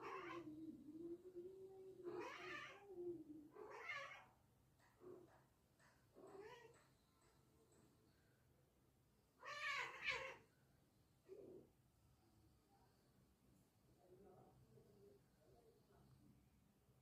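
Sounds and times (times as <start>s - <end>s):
cat meowing: 0.0s - 0.5s, 2.0s - 2.9s, 3.5s - 4.3s, 6.3s - 6.8s, 9.4s - 10.4s.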